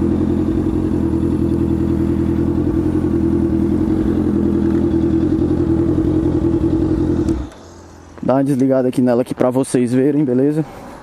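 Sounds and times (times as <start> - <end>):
motorcycle engine idling: 0.0 - 8.2.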